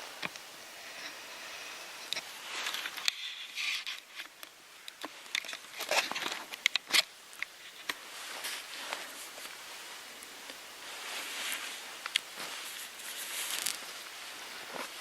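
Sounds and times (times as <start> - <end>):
dry leaves and twigs crackling: 2.0 - 15.0
twigs snapping: 12.0 - 13.9.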